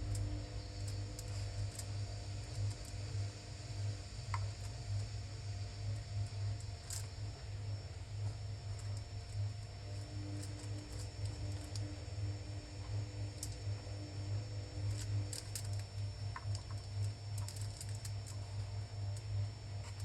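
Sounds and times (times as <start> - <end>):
low electrical hum: 0.0 - 20.0.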